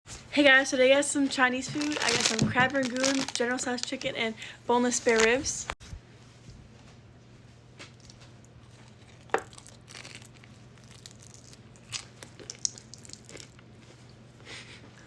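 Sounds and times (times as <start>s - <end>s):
food packaging crinkling: 1.6s - 5.6s, 7.9s - 13.7s.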